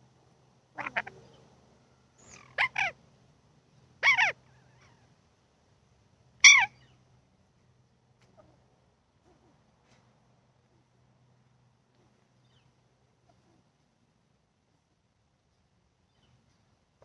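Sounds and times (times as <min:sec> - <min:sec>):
short animal calls: 0:00.8 - 0:01.2.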